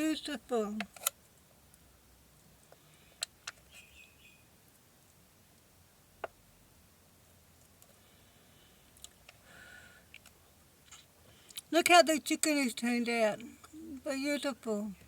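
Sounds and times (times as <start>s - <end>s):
faint high chirp: 3.7s - 4.5s.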